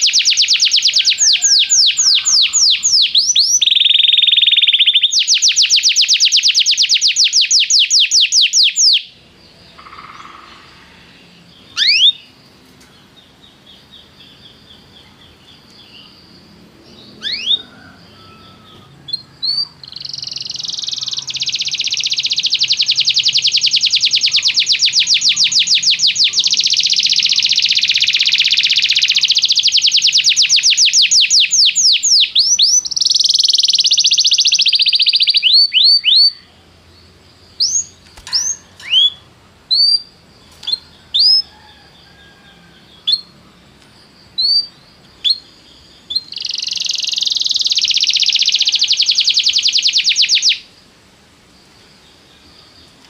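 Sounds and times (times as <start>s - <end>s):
canary trilling: 0.0s - 9.2s, 9.8s - 11.0s, 11.6s - 12.3s, 17.1s - 36.5s, 37.6s - 40.1s, 46.1s - 50.6s
canary chirps: 0.0s - 43.6s, 44.2s - 50.7s.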